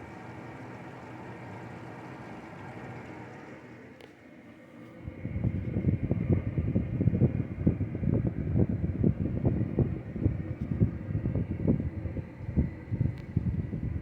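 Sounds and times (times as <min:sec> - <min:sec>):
ceiling fan running: 0:00.0 - 0:14.0
airflow buffeting microphone: 0:04.6 - 0:14.0.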